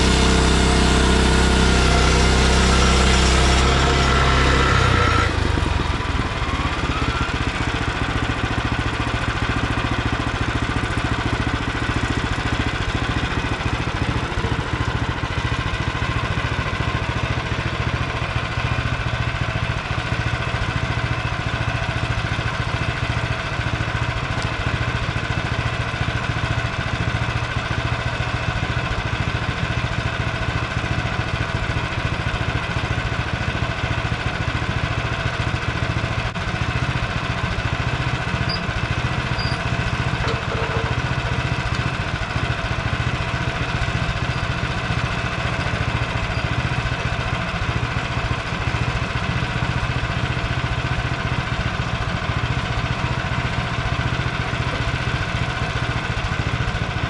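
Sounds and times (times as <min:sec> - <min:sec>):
gas engine running steadily: 0:00.0 - 0:57.0.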